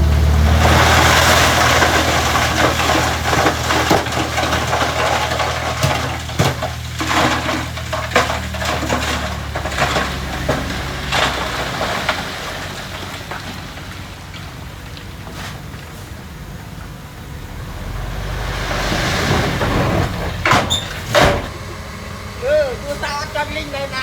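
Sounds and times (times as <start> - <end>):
heavy diesel engine drone: 0.0 - 7.1, 15.8 - 24.0
rocks clattering and cracking: 0.4 - 17.8.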